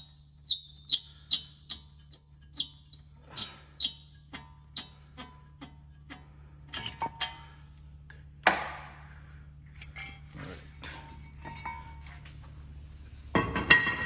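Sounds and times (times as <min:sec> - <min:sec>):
ringing metal clank: 0:09.8 - 0:10.3
metal tools clinking: 0:09.8 - 0:12.4.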